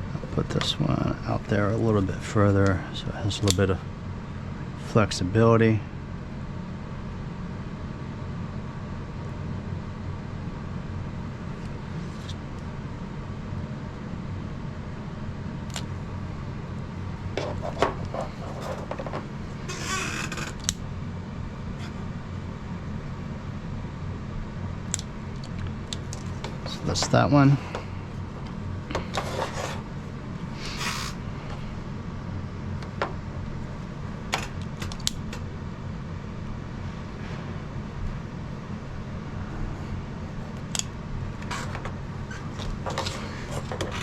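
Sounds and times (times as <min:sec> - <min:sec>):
light handling clicks: 0:03.4 - 0:03.6
heat gun blowing: 0:30.5 - 0:31.2.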